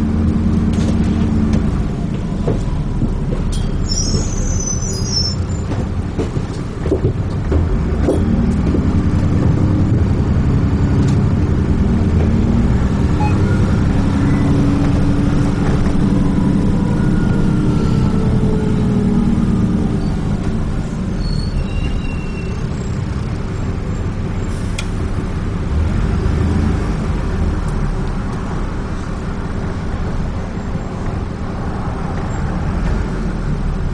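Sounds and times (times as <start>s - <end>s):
bus engine and road rumble: 0.0s - 33.9s
sharp rattles and knocks: 5.6s - 10.1s.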